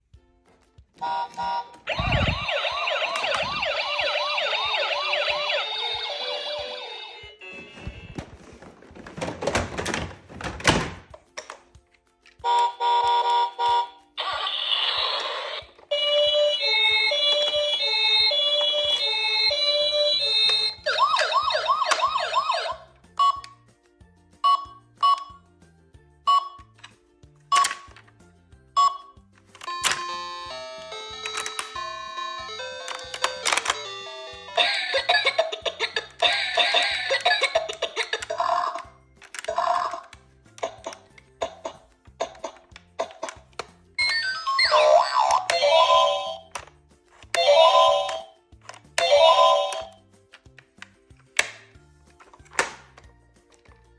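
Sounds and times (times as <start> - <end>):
toy sirens wailing: 1.0 - 8.1, 12.4 - 23.4, 29.6 - 40.9, 44.0 - 46.6, 47.3 - 48.3, 49.0 - 50.0.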